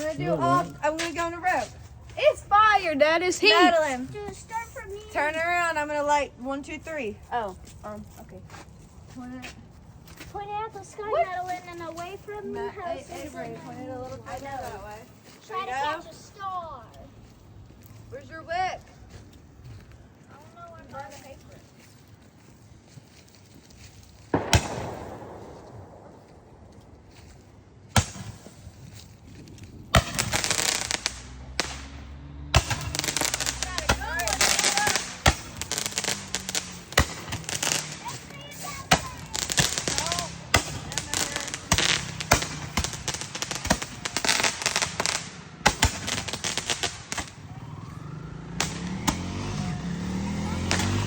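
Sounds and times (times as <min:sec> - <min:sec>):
fireworks crackling: 0:00.0 - 0:07.1, 0:24.1 - 0:51.0
fireworks popping: 0:24.3 - 0:27.1, 0:29.7 - 0:47.8, 0:48.6 - 0:49.6, 0:50.6 - 0:51.0.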